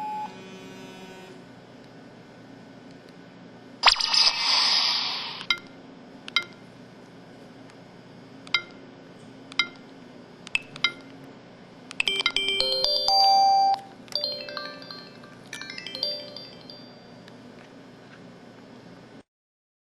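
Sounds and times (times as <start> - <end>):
phone chime jingle: 12.1 - 17.2.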